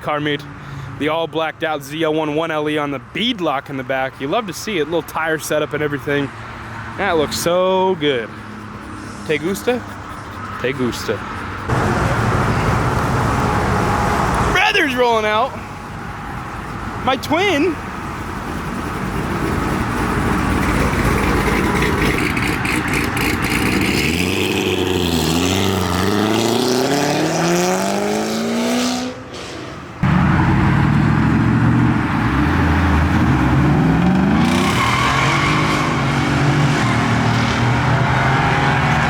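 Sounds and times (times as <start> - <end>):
car engine accelerating: 18.1 - 39.0.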